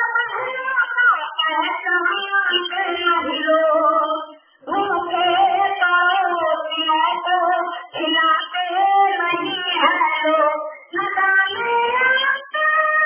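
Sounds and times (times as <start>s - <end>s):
woman singing devotional song: 0.0s - 13.0s.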